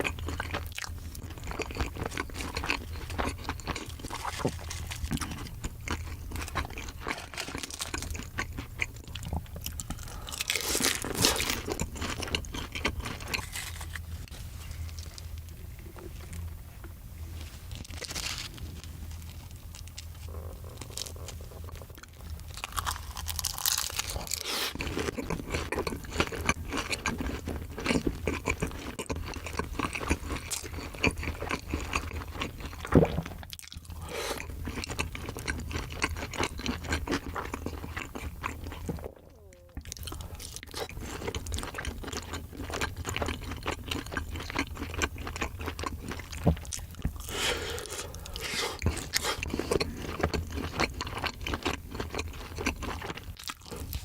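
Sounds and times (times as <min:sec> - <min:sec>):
crunching and chewing food: 0:00.0 - 0:54.0
low steady hum: 0:00.0 - 0:54.0.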